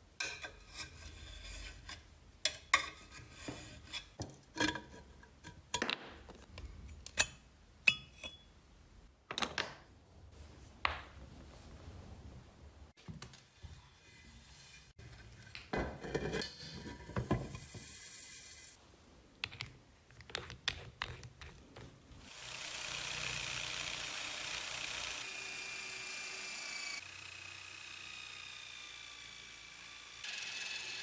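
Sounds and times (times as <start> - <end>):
small power tool whining: 22.2 - 31.0.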